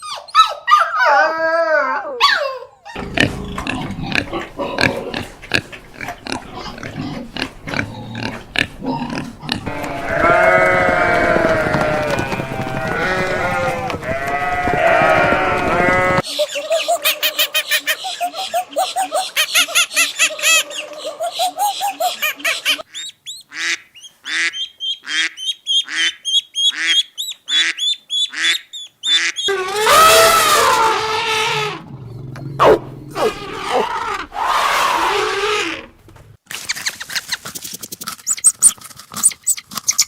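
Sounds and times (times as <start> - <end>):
loud animal cry: 2.4 - 16.3, 29.1 - 35.9
animal bleating: 6.0 - 16.3
sharp repeating bird calls: 16.2 - 29.6.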